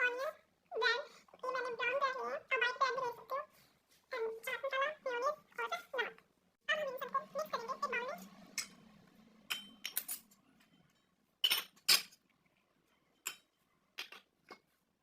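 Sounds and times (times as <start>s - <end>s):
utensils and dishes clinking: 9.4s - 12.2s.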